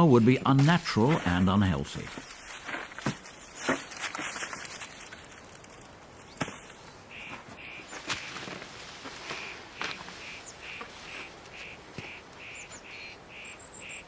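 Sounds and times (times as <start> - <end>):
bird calling repeated note: 7.1 - 8.4, 9.3 - 14.0.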